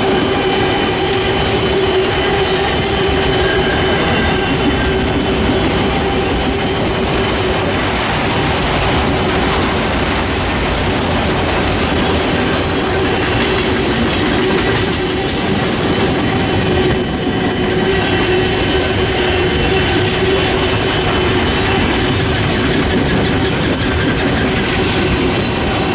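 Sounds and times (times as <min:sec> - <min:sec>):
freight train clickety-clack: 0:00.0 - 0:25.9
faint steady wheel squeal: 0:21.3 - 0:25.9.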